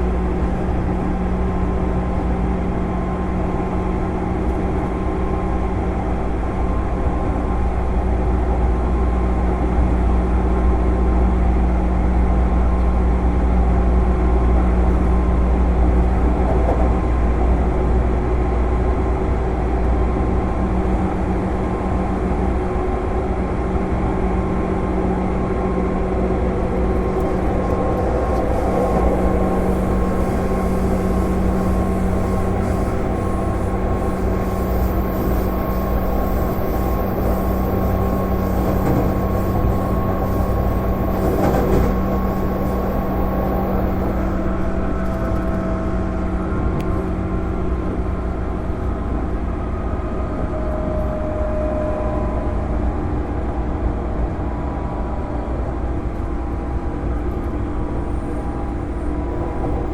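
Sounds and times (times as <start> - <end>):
rail and wheel noise: 0.0 - 59.9
train motor and fan hum: 0.0 - 59.9.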